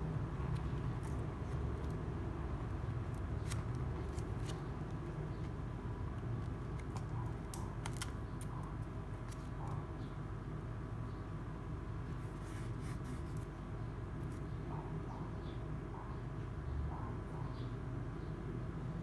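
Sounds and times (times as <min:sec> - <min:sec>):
notebook cover and paper clicks: 0:02.6 - 0:08.6.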